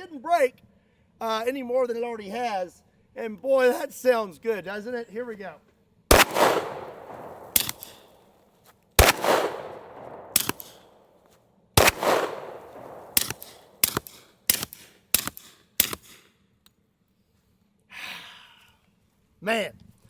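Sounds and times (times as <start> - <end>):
suppressed pistol shots: 6.1 - 8.2, 9.0 - 11.0, 11.8 - 16.2.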